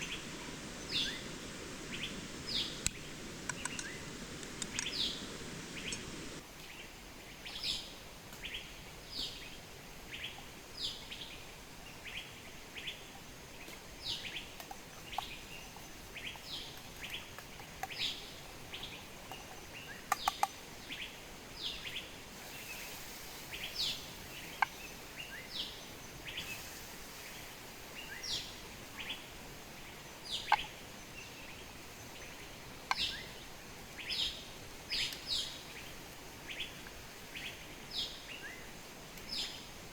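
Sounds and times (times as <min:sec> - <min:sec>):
small birds chirping: 0:00.0 - 0:39.7
faint steady hiss: 0:00.0 - 0:39.9
sharp clicks: 0:02.8 - 0:06.4.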